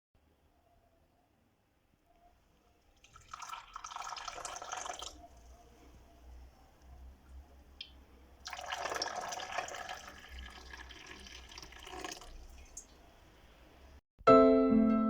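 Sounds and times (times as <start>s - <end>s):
water dripping: 2.1s - 5.6s, 6.8s - 13.2s
tap water running and splashing: 3.0s - 5.2s, 7.8s - 13.1s.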